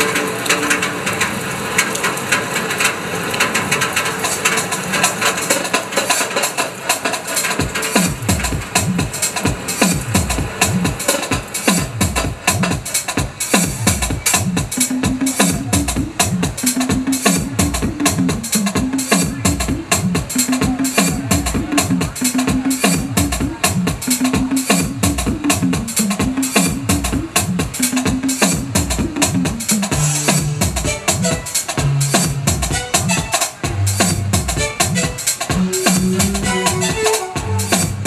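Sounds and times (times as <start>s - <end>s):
electronic music with drum beat: 0.0s - 2.0s, 3.7s - 38.0s
deep booming drum hits: 7.6s - 32.8s
deep bass thuds: 8.1s - 33.1s, 33.7s - 38.0s.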